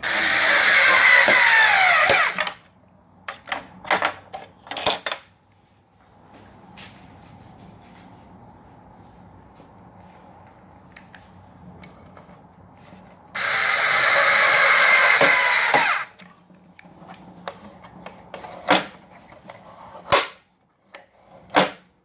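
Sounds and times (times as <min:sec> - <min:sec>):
power drill running: 0:00.0 - 0:02.5, 0:13.4 - 0:16.2.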